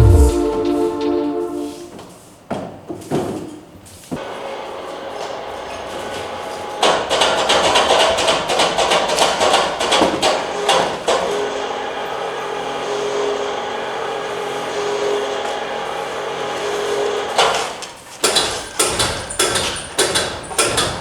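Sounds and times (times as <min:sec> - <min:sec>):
steady hum with higher note: 0:00.0 - 0:02.0.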